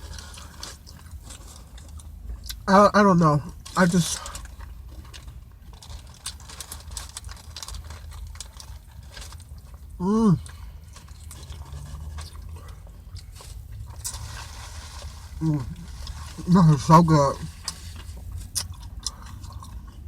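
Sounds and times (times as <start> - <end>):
person chewing food: 0.0 - 2.6, 4.2 - 16.6, 17.3 - 20.0
low steady hum: 0.0 - 20.0.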